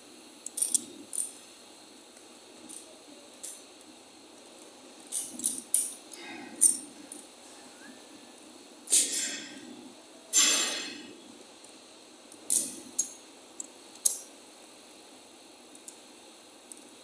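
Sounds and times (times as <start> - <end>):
metallic clinks and taps: 0.4 - 1.4.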